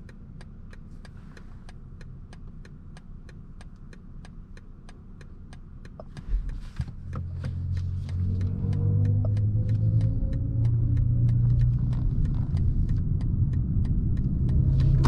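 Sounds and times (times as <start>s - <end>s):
electric car drive hum: 0.0s - 15.0s
regular clicking: 0.0s - 15.0s
steady ticking: 0.0s - 15.0s
synthetic drive tone rising: 7.6s - 15.0s.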